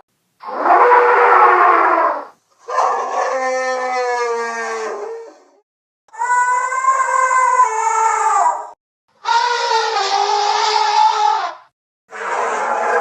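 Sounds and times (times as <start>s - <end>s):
loud animal calls: 0.4s - 2.4s, 12.1s - 13.0s.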